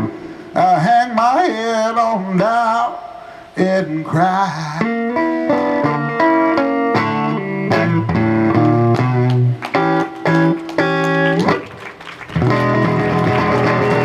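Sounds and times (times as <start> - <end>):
blues guitar picked notes: 4.4 - 14.0.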